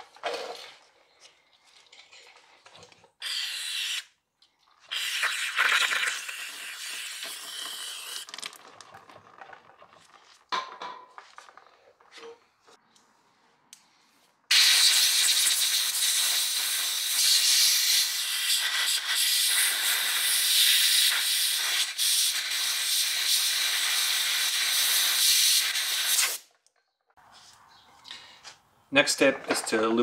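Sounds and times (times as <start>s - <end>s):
aerosol can spraying hiss: 4.9s - 8.3s, 14.5s - 26.4s.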